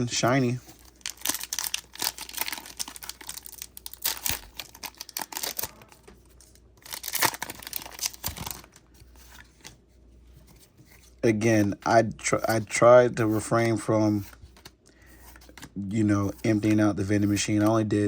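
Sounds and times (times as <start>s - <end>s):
foil wrapper crinkling: 0.2s - 9.0s.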